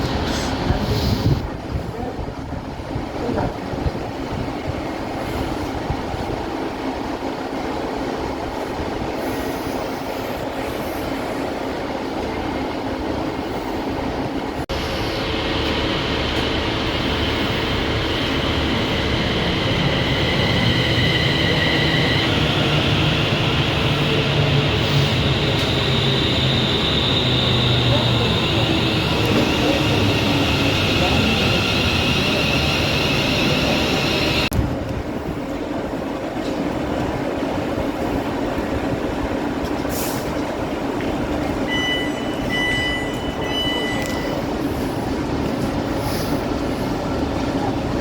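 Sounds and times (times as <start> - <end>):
train rumbling on rails: 0.0 - 48.0
high whine: 14.7 - 34.6.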